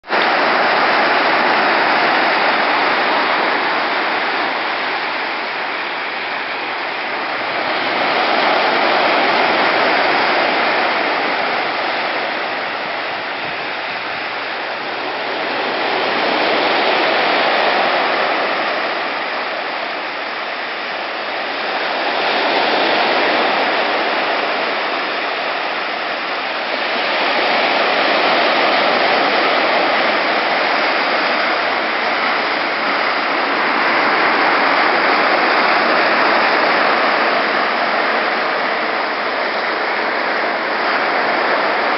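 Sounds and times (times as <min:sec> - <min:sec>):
waves breaking on beach: 0:00.0 - 0:41.9.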